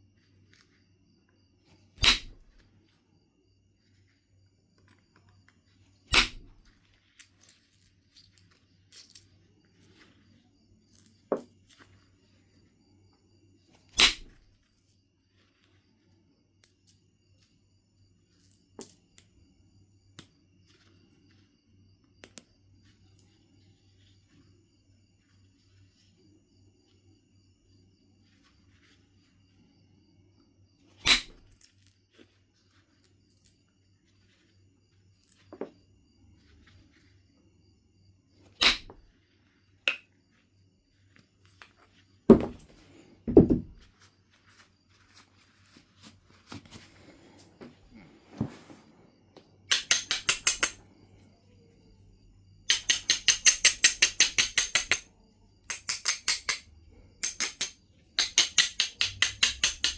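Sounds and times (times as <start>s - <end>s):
stone knapping strikes: 2.0s - 2.6s, 6.1s - 6.7s, 13.9s - 14.5s, 31.0s - 31.5s, 38.6s - 39.1s, 49.7s - 50.8s.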